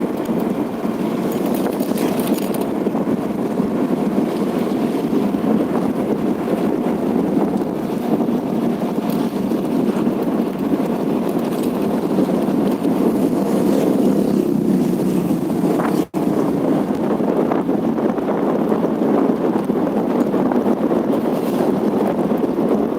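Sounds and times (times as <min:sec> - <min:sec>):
wind rushing over microphone: 0:00.0 - 0:22.9
vehicle moving: 0:07.8 - 0:16.9.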